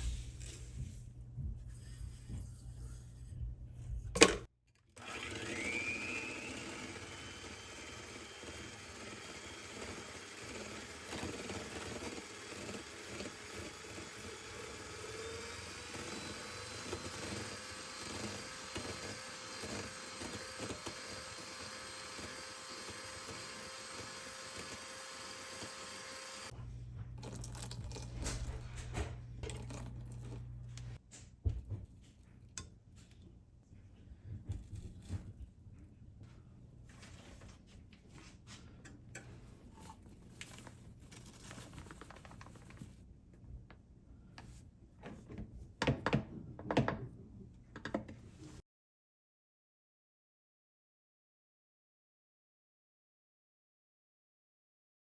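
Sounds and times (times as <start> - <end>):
small motor running: 5.0 - 26.6.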